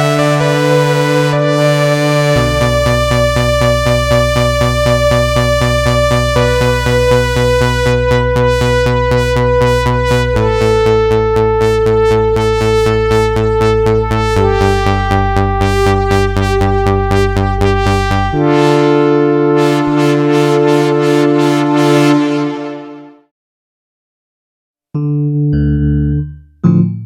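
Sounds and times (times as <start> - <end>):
pulsing synthesizer chords: 0.0 - 23.2.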